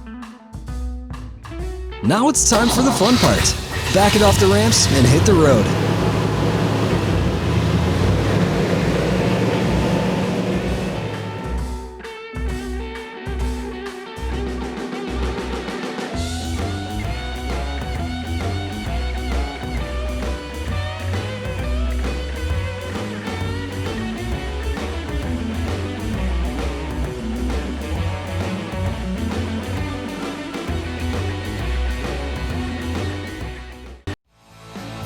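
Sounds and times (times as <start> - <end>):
rock music with electric guitar: 9.6 - 35.0.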